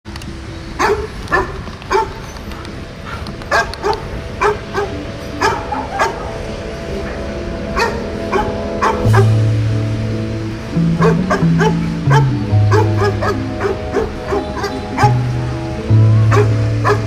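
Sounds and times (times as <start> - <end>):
dog barking: 0.8 - 2.2, 3.1 - 6.4, 7.8 - 9.3, 11.0 - 15.2, 16.3 - 17.0.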